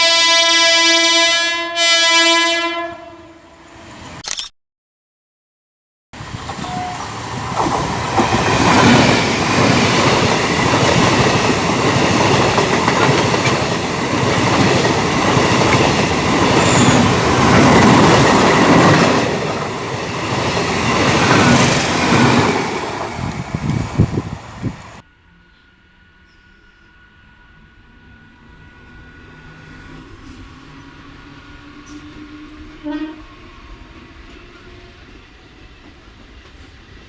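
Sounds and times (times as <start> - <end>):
train passing rumble: 6.2 - 37.0
wheels clacking over rail joints: 7.5 - 23.2.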